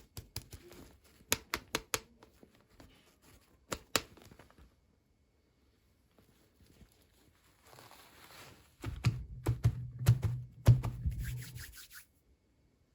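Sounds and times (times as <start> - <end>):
plastic packaging rustle: 2.4 - 4.8, 6.1 - 9.0.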